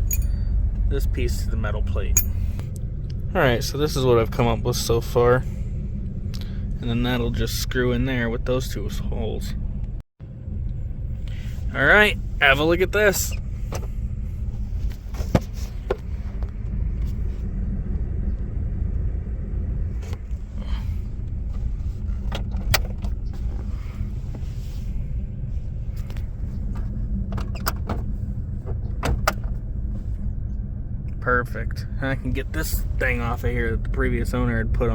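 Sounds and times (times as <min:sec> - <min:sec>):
steady low rumble: 0:00.0 - 0:34.9.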